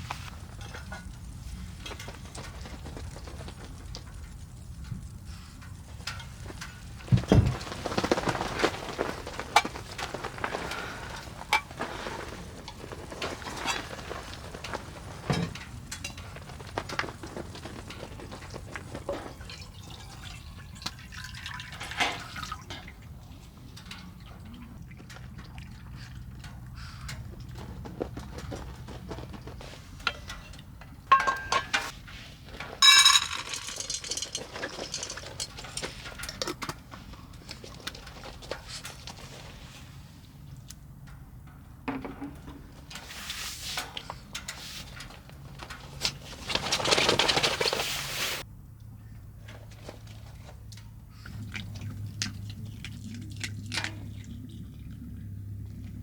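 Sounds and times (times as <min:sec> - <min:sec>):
cup ringing clink: 0:31.1 - 0:31.9, 0:32.8 - 0:34.0
dishes tapping and clicking: 0:31.1 - 0:31.9.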